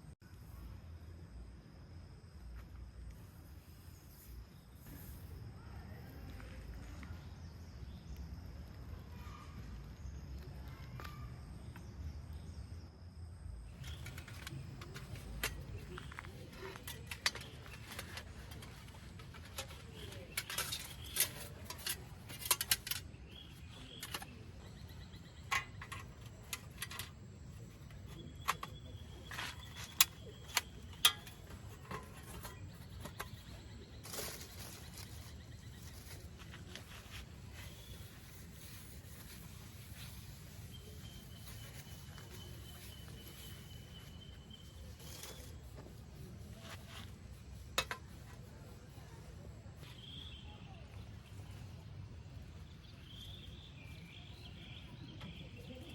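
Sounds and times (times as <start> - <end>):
small objects clicking and clinking: 13.7 - 40.2.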